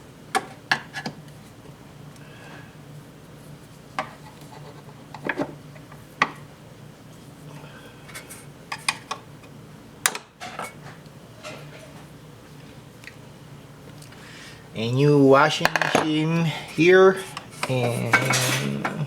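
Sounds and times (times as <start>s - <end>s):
faint steady hum: 0.0s - 19.0s.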